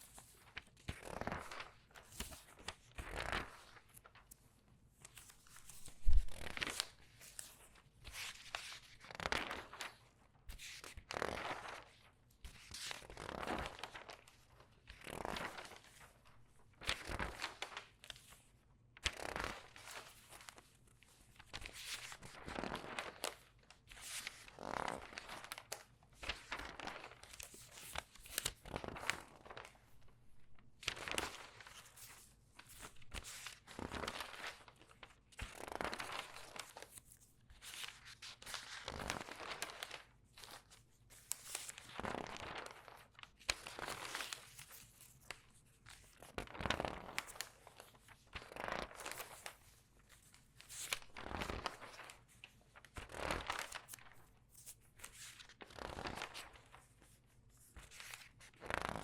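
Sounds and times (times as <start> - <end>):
newspaper pages rustling: 15.2 - 18.4, 21.4 - 59.0.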